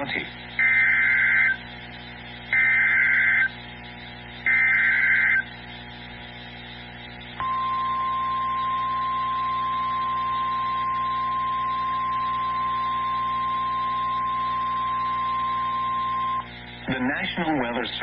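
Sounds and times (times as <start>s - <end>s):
harsh buzzing data bursts: 0.0s - 18.0s
steady single-pitch alert tone: 7.4s - 16.5s.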